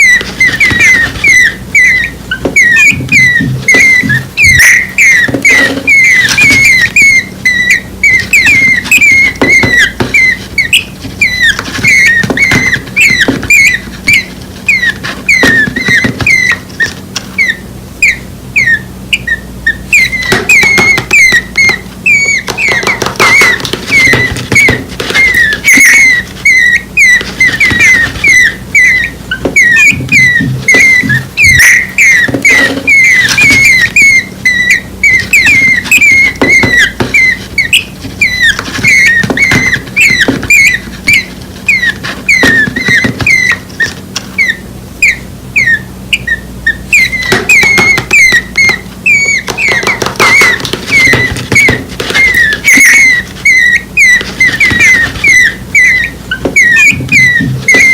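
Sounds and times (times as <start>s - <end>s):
nestling birds begging chirps: 0.0s - 57.9s
scattered clicks and knocks: 2.4s - 7.0s, 22.4s - 26.2s, 29.4s - 34.0s, 47.2s - 53.4s.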